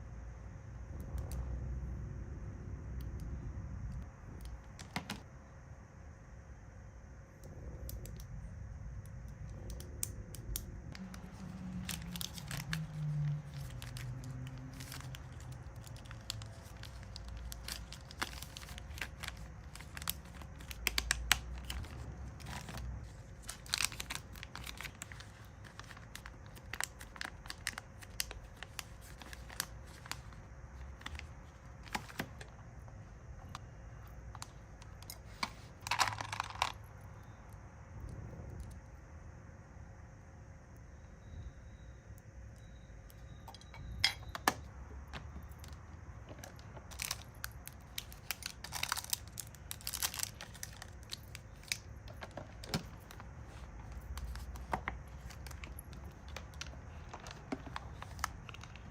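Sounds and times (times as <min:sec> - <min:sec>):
steady low hum: 0:00.0 - 0:58.9
plastic packaging crinkling and tearing: 0:10.9 - 0:32.5, 0:46.4 - 0:58.9.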